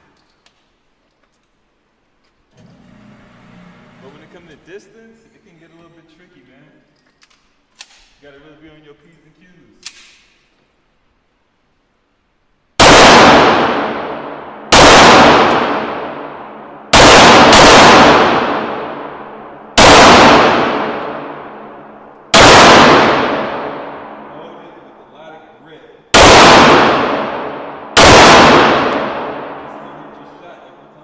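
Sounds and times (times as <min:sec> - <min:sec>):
pistol shots echoing: 0:12.8 - 0:25.0, 0:26.1 - 0:30.2.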